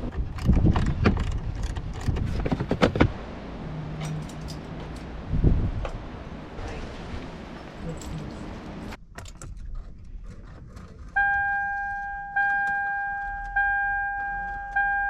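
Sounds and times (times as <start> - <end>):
car warning chime beeping: 11.2 - 15.0.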